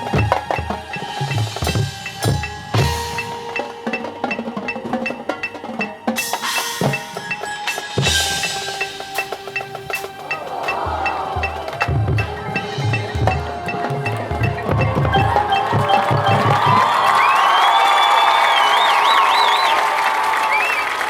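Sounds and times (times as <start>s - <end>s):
wood-block and mallet strikes: 0.0s - 17.6s
cymbal crashes: 6.2s - 13.4s.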